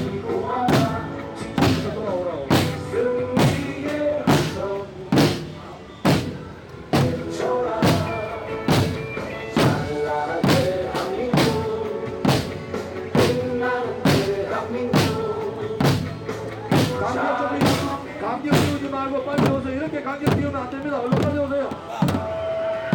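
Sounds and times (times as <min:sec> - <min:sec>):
large drum beaten: 0:09.6 - 0:22.4.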